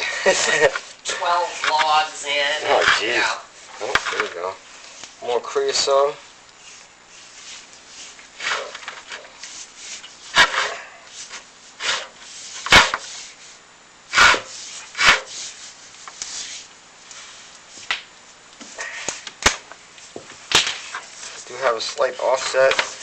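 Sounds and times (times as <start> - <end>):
camera scraping against flue walls: 0.3 - 5.1, 6.6 - 13.6.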